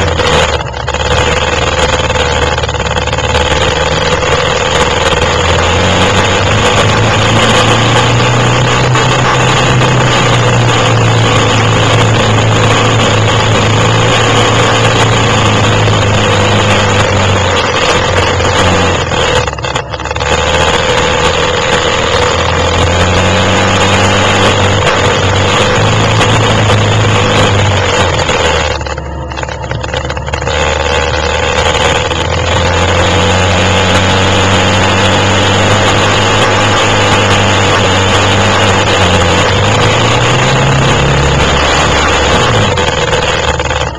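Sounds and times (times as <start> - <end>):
quad bike engine revving: 0.0 - 43.9.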